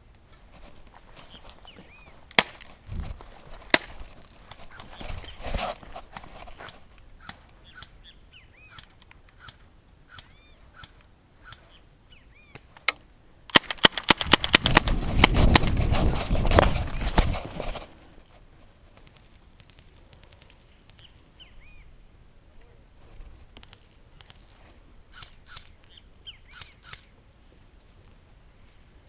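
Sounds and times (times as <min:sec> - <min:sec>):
faint bird chirps: 0:01.2 - 0:02.2, 0:07.2 - 0:12.8, 0:20.9 - 0:22.9, 0:25.1 - 0:27.2.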